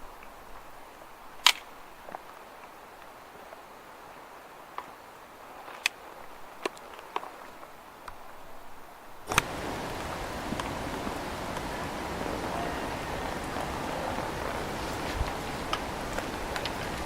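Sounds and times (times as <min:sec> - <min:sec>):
rain falling hiss: 0:00.0 - 0:17.0
raindrops ticking: 0:09.3 - 0:17.0.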